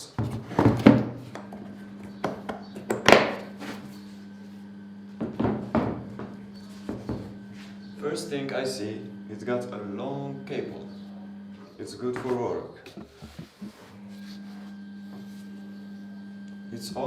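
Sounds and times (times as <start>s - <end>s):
steady low hum: 0.0s - 17.0s
objects thunking on a hard surface: 0.2s - 3.4s, 5.2s - 7.4s.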